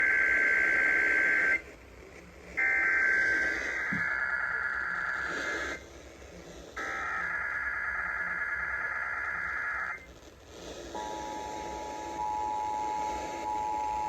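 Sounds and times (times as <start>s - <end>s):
shrill two-tone digital data bursts: 6.8s - 10.0s.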